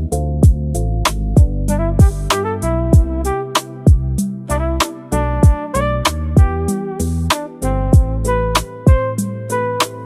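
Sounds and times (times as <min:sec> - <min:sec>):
deep kick drum: 0:00.4 - 0:00.7, 0:01.4 - 0:02.3, 0:03.0 - 0:03.2, 0:03.9 - 0:04.2, 0:05.4 - 0:05.7, 0:06.4 - 0:06.6, 0:08.0 - 0:08.2, 0:08.9 - 0:09.1.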